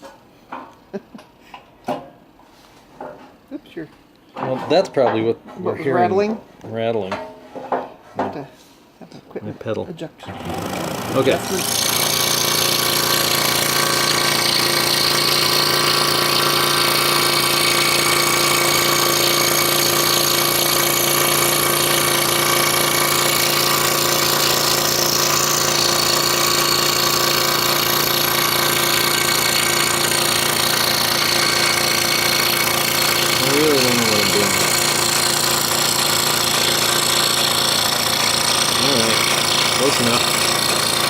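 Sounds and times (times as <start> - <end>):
scroll saw cutting wood: 10.2 - 41.0.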